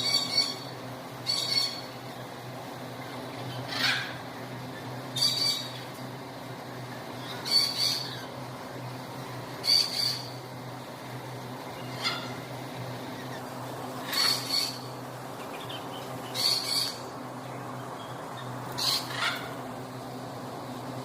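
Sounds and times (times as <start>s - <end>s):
lorikeet screeching calls: 0.0s - 1.9s, 3.5s - 4.2s, 5.2s - 5.8s, 7.2s - 8.3s, 9.6s - 10.4s, 14.0s - 14.9s, 15.6s - 17.0s, 18.8s - 19.5s.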